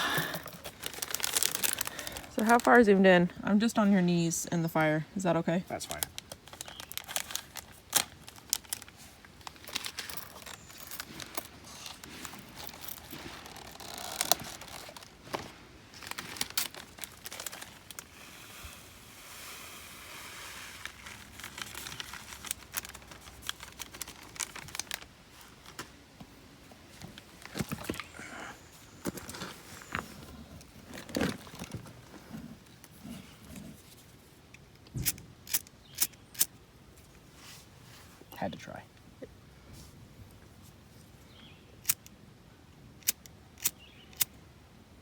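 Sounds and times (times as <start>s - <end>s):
crinkling and crackling handling: 0.0s - 35.6s.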